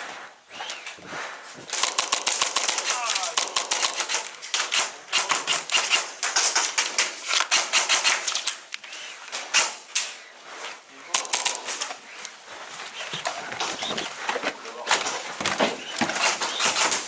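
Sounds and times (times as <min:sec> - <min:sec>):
airsoft guns firing: 0:01.7 - 0:08.6, 0:11.1 - 0:12.0, 0:14.9 - 0:17.0.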